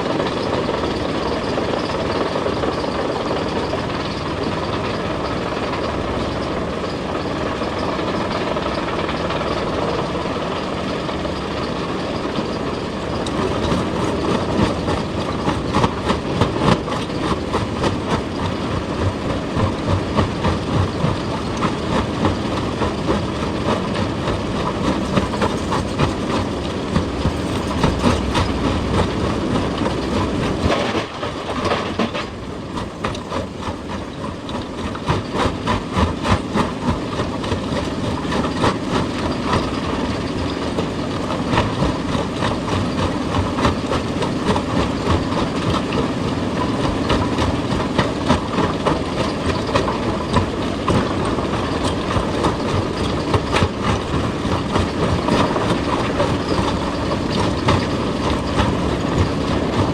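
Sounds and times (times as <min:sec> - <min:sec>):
heavy machinery clattering on rock: 0:12.5 - 0:59.9.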